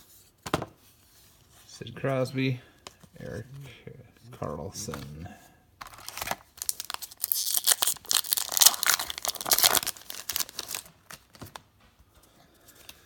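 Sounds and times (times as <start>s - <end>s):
wrapper tearing and crinkling: 5.8s - 11.6s.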